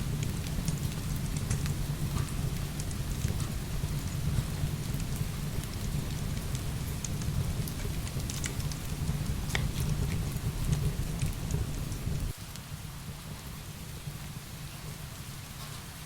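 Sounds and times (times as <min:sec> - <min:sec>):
deep low rumble: 0:00.0 - 0:12.3
heavy rain falling: 0:00.0 - 0:13.6.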